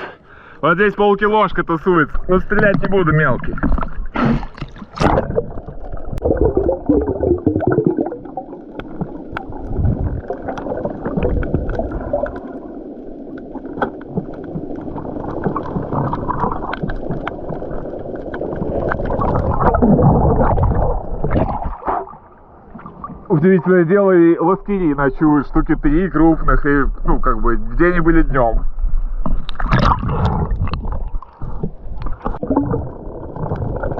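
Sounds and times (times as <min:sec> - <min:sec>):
underwater gurgling and bubbling: 0:02.2 - 0:23.3, 0:25.8 - 0:33.9
sharp clicks underwater: 0:02.5 - 0:19.8, 0:28.9 - 0:33.9.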